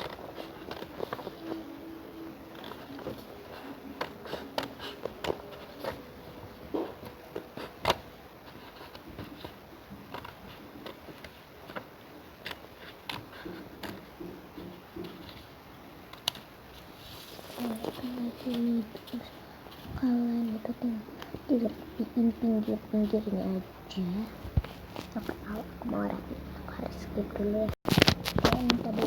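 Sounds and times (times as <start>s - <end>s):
scissors snipping paper: 0.0s - 6.1s
paper rustling: 0.0s - 15.5s, 16.1s - 23.6s, 24.4s - 25.6s, 27.4s - 29.0s.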